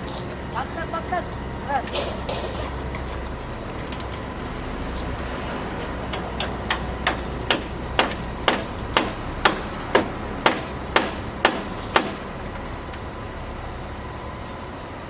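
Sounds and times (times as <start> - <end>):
hammer blows: 5.3 - 13.0.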